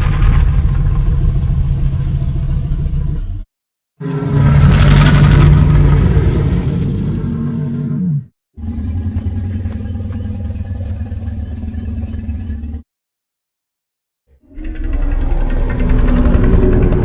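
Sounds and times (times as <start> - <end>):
low rumbling growl: 0.0 - 12.8, 14.3 - 17.0
dinosaur roar: 4.0 - 12.8, 14.3 - 17.0.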